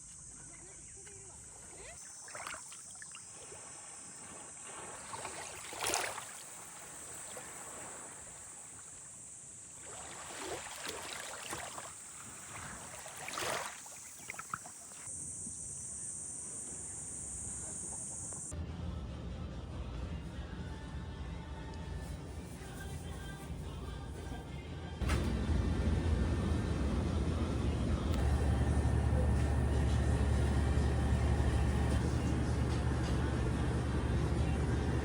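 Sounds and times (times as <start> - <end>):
high-pitched insect drone: 12.8 - 18.5.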